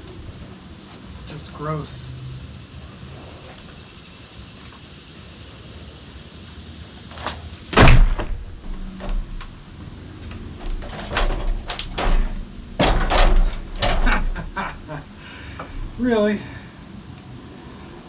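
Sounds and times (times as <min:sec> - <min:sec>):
log thumping and knocking: 0:07.2 - 0:09.5, 0:10.8 - 0:15.0.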